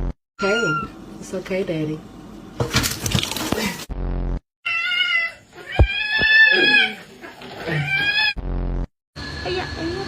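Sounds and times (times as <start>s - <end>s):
cat meowing loudly: 4.7s - 7.0s.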